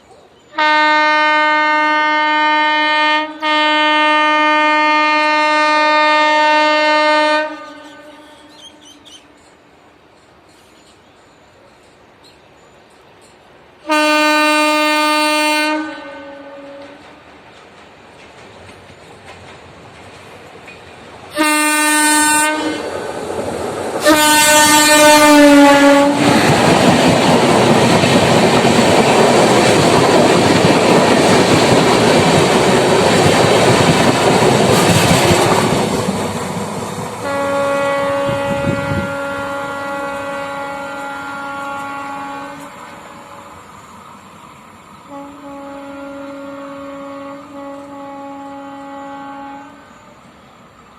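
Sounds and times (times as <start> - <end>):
train coaches rushing past: 0.0 - 50.9
train horn blasts: 0.5 - 9.2, 13.8 - 17.2, 21.3 - 23.0, 24.0 - 26.6, 37.2 - 43.6, 45.1 - 50.2
wheels rattling on rails: 16.8 - 21.4, 26.1 - 37.2.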